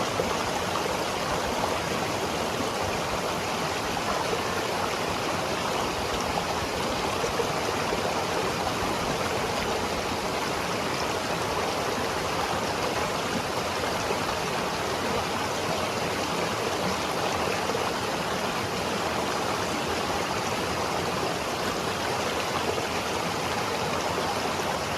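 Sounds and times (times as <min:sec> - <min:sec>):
river water rushing: 0:00.0 - 0:24.9.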